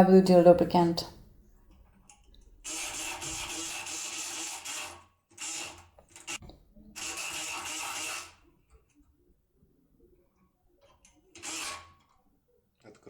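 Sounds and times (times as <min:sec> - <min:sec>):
electric pick gun buzzing: 0:02.6 - 0:06.4, 0:07.0 - 0:08.5, 0:11.4 - 0:11.9.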